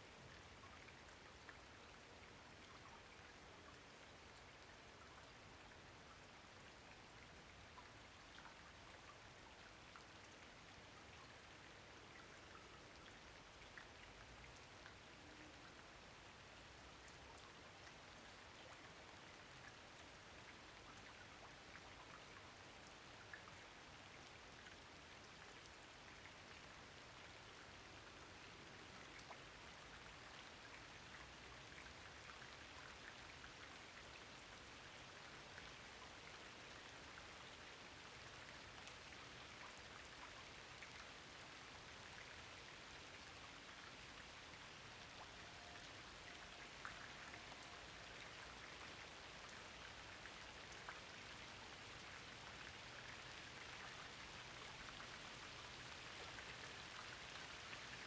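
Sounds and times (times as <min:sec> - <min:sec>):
rain falling: 0:25.6 - 0:58.0.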